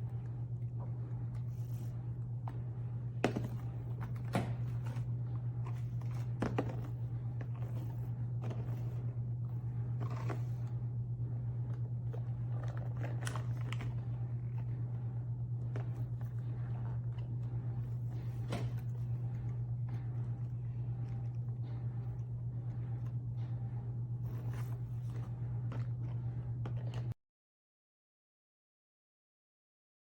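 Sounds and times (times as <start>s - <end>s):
steady low hum: 0.0s - 27.2s.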